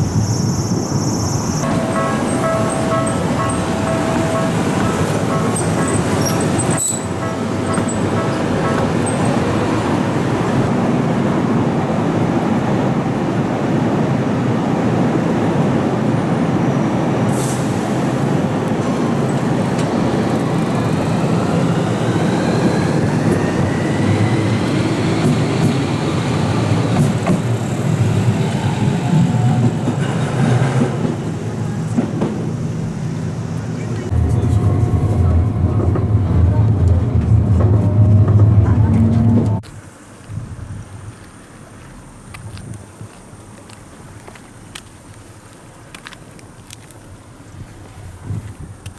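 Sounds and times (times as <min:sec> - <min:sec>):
road traffic rumble: 0:00.0 - 0:14.8, 0:17.0 - 0:48.9
electric train motor whine: 0:18.8 - 0:29.9, 0:31.3 - 0:39.6.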